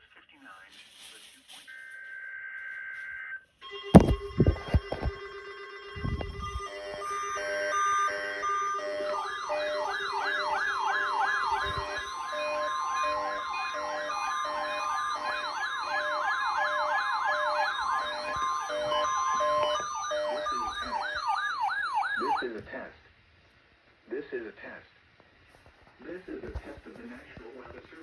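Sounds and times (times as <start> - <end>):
steady alarm tone: 1.6 - 22.5
siren-like warble: 1.7 - 22.5
beeping alert tones: 3.9 - 5.2, 6.0 - 21.5.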